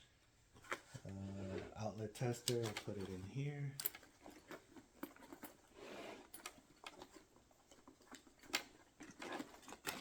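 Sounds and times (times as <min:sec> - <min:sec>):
tool bag rustle: 0:03.9 - 0:10.0.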